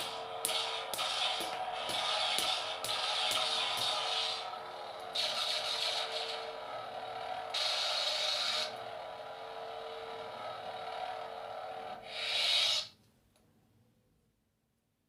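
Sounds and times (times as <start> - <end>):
lightsaber hissing surges: 0.0 - 4.6, 5.2 - 6.5, 7.6 - 8.7, 12.0 - 13.0
toy lightsaber buzzing hum: 0.0 - 13.0.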